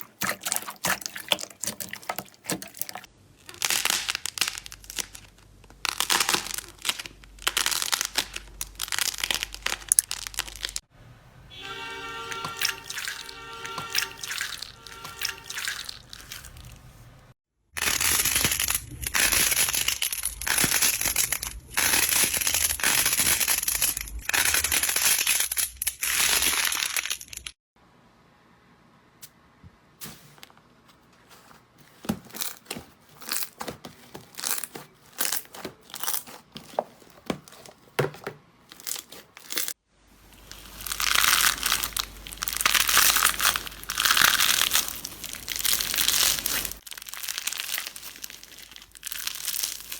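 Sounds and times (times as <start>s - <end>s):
slime squeezed by hand crackling: 40.4s - 49.9s.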